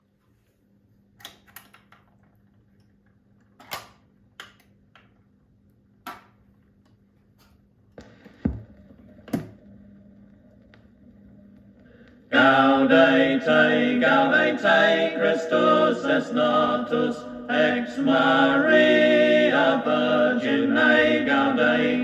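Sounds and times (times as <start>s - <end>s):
low hum: 7.8s - 22.0s.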